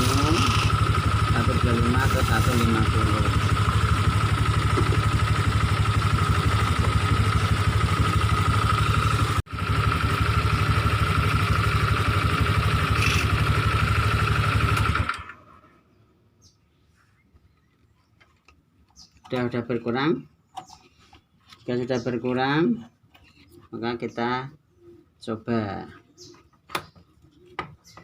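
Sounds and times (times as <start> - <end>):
scooter engine idling: 0.0 - 15.6.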